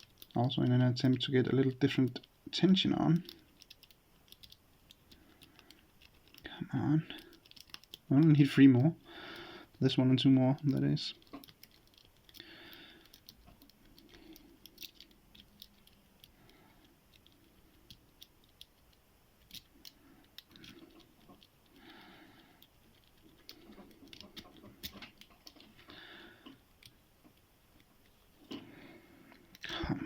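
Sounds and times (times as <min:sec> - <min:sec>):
lock pick clicking and scraping: 0:07.3 - 0:08.1.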